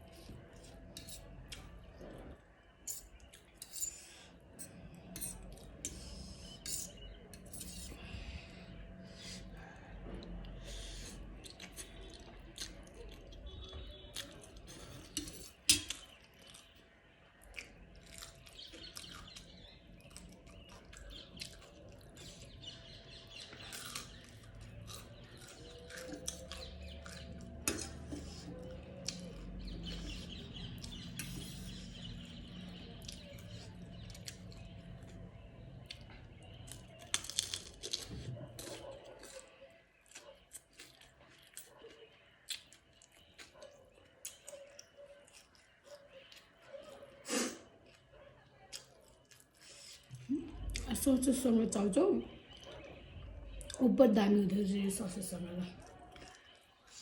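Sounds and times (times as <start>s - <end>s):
chewing: 0.0s - 51.2s, 52.2s - 53.8s, 55.7s - 57.0s
cutlery clinking on a dish: 14.9s - 16.1s.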